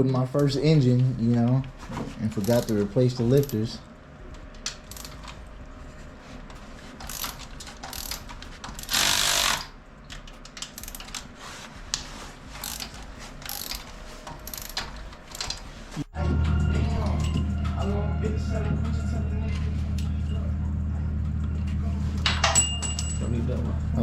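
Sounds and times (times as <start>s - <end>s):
metal tools clinking: 2.2s - 3.8s, 4.7s - 5.4s, 12.6s - 15.7s, 22.2s - 23.6s
ratchet wrench clicking: 2.4s - 3.7s, 4.6s - 5.4s, 7.0s - 9.7s, 10.4s - 11.3s, 12.6s - 15.6s.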